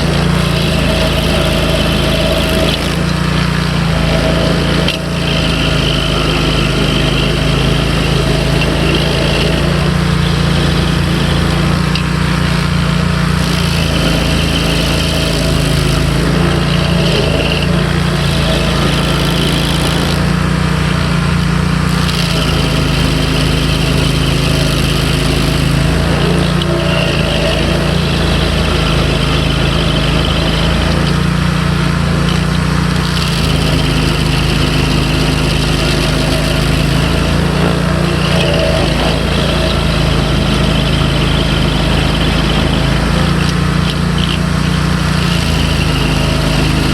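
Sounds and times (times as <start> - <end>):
high-pitched grinding: 0.0 - 46.9
stump grinder engine drone: 0.0 - 46.9.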